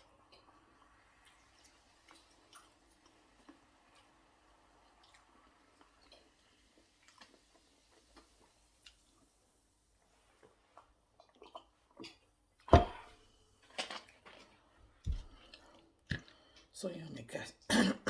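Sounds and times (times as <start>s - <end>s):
chewing and wet mouth clicks: 1.3s - 4.1s, 4.9s - 6.3s, 7.0s - 9.2s
loud short thump: 12.7s - 13.1s.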